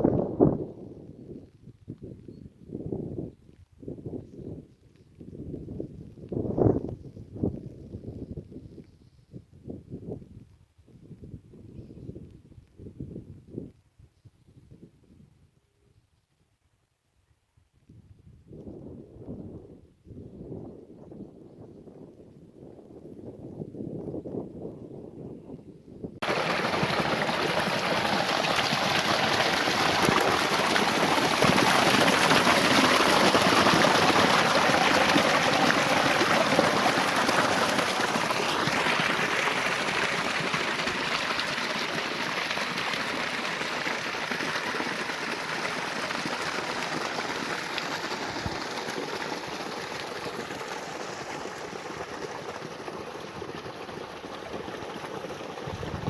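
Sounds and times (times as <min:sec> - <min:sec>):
water hissing: 0:26.2 - 0:44.7.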